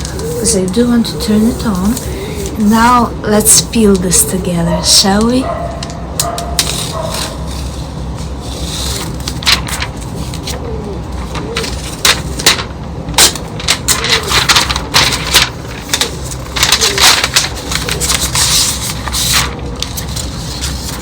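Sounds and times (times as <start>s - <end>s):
plastic film peeling: 5.2s - 21.0s.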